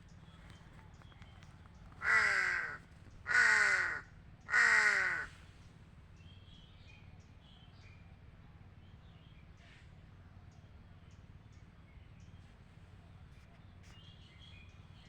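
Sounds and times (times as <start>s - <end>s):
crow cawing: 2.0s - 5.4s.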